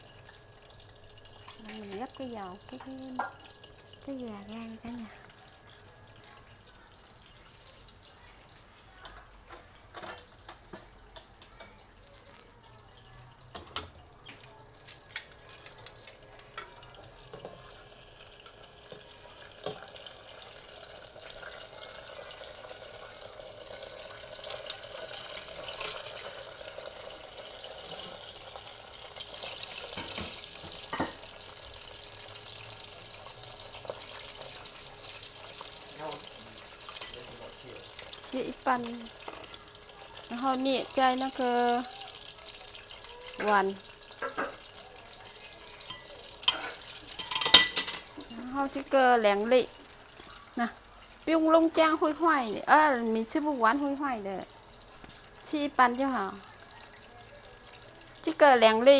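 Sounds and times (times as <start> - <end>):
dishes and utensils clinking: 9.0 - 11.8, 13.5 - 17.7, 23.8 - 27.0, 29.0 - 31.4, 33.8 - 38.1, 43.2 - 44.8, 45.7 - 48.6.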